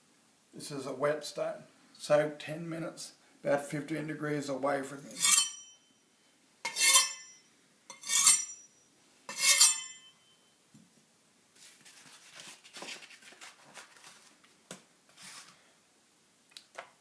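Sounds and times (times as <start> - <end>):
knife scraping on whetstone: 5.1 - 5.7, 6.7 - 7.3, 7.9 - 8.6, 9.3 - 10.1.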